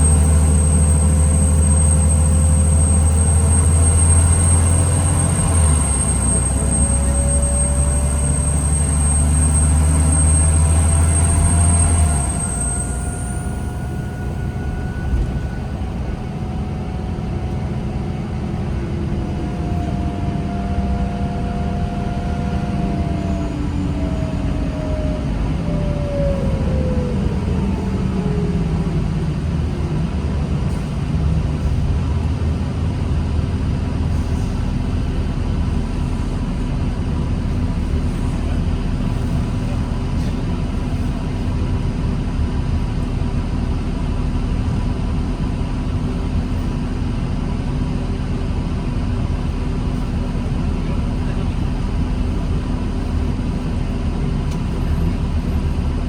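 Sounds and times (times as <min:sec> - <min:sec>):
bus engine drone: 0:00.0 - 0:56.0
bus rumble: 0:00.0 - 0:56.0.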